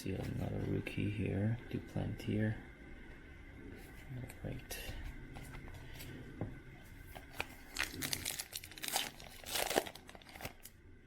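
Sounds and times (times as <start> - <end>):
foil wrapper crinkling and tearing: 7.2 - 10.8.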